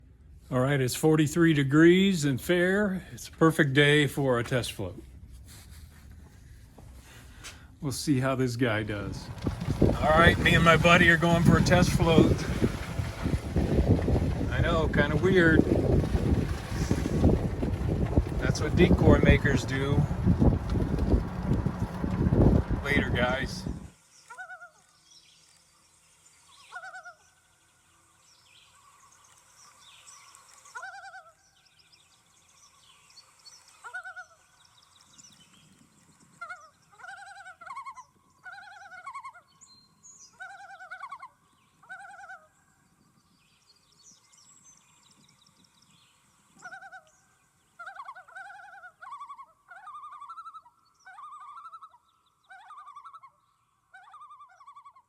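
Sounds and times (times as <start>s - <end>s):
loon calling: 8.9s - 13.3s, 18.4s - 24.8s, 40.3s - 42.6s, 46.6s - 47.2s, 47.8s - 55.0s.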